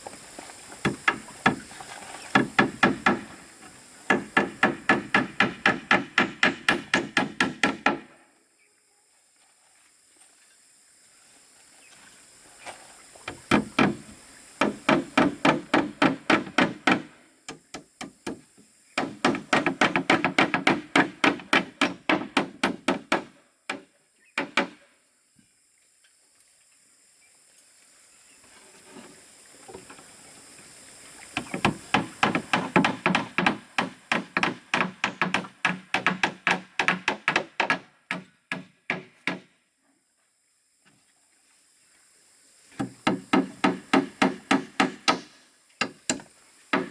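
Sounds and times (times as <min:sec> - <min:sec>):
tool striking wood: 0:02.3 - 0:03.4, 0:04.1 - 0:08.1, 0:13.4 - 0:18.4, 0:19.0 - 0:24.8, 0:31.4 - 0:39.5, 0:42.8 - 0:46.9.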